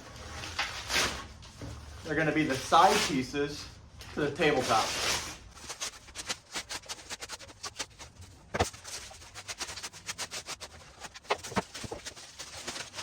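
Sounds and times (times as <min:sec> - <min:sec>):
packing wrap crinkling and tearing: 0:04.1 - 0:13.0.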